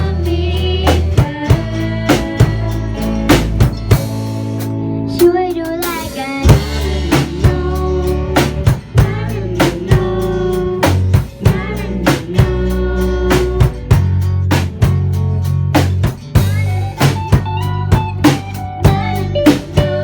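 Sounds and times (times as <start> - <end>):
person singing: 0.0 - 3.6, 5.2 - 13.9, 18.8 - 20.0
pop song with drum beat: 0.0 - 20.0.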